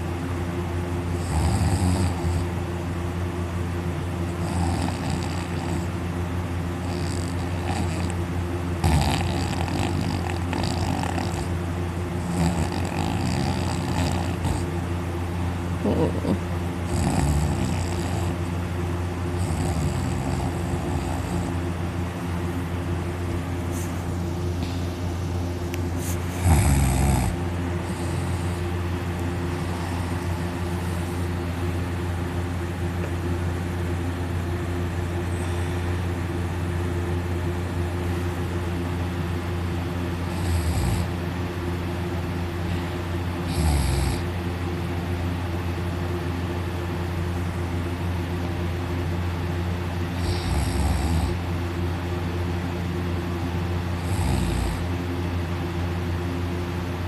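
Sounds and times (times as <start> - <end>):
steady low hum: 0.0 - 57.0
person snoring loudly: 1.2 - 2.5, 4.4 - 6.0, 6.8 - 8.2, 8.8 - 11.6, 12.2 - 14.8, 15.8 - 18.5, 19.4 - 21.6, 26.0 - 28.7, 40.2 - 41.1, 43.4 - 44.3, 50.1 - 51.5, 54.0 - 54.9.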